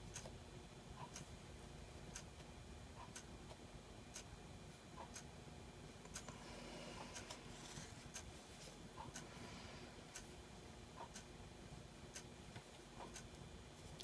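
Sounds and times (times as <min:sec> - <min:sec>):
low steady hum: 0:00.0 - 0:14.0
clock ticking: 0:00.9 - 0:01.3, 0:02.9 - 0:03.3, 0:04.9 - 0:05.3, 0:06.1 - 0:06.4, 0:09.0 - 0:09.3, 0:11.0 - 0:11.3, 0:13.0 - 0:13.4
clock ticking faintly: 0:00.9 - 0:01.4, 0:02.1 - 0:03.3, 0:04.9 - 0:05.4, 0:06.0 - 0:07.4, 0:08.9 - 0:09.3, 0:10.1 - 0:10.3, 0:10.9 - 0:11.3, 0:12.1 - 0:12.3.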